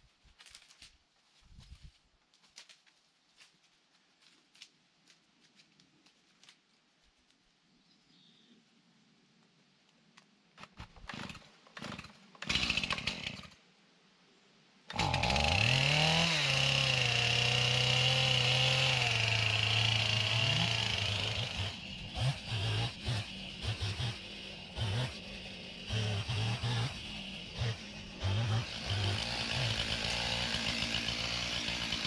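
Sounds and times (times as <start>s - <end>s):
chainsaw running: 10.6s - 13.6s, 14.9s - 32.0s.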